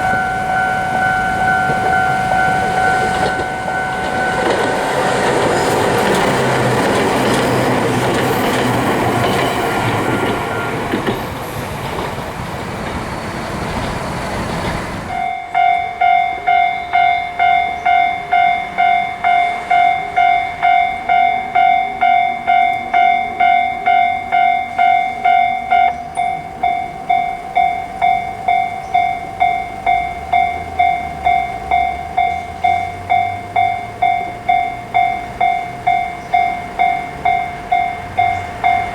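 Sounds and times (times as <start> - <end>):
level crossing bell ringing: 0.0 - 6.5, 15.1 - 38.9
train running past: 0.0 - 38.9.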